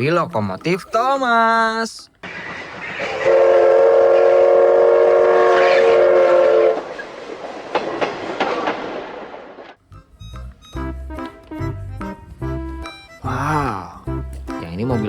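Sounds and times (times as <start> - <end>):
train rumble: 2.2 - 10.4
train horn chord: 3.2 - 6.9
sharp clacks: 7.5 - 9.8.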